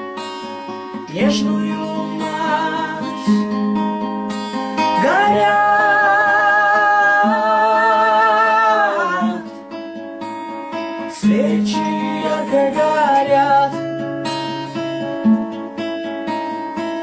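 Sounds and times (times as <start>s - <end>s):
acoustic guitar: 0.0s - 17.0s
person singing with vibrato: 1.0s - 3.8s, 4.8s - 9.6s, 11.0s - 14.0s.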